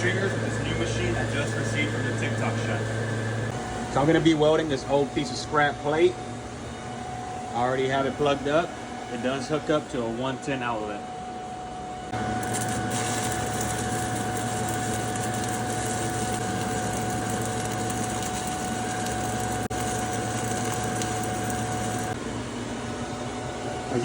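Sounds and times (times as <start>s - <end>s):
welding arc crackling hiss: 12.1s - 22.2s.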